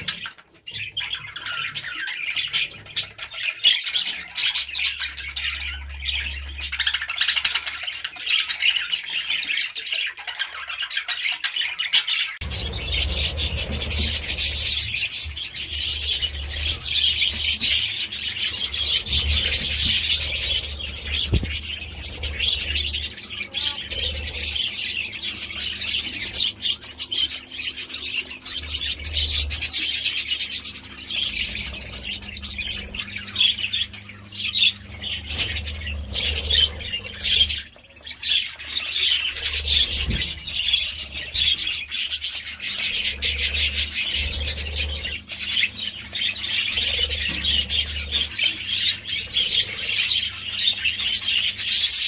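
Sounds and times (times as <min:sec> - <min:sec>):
budgerigars chirping and warbling: 0:00.0 - 0:52.0
low rumbles: 0:12.4 - 0:26.7.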